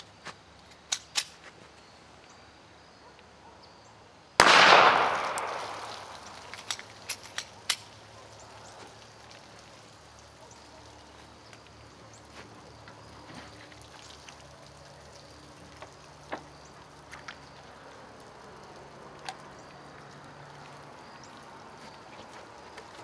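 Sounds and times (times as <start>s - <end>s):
sharp single drips: 4.4s - 10.7s
water trickling and dripping: 5.4s - 23.0s.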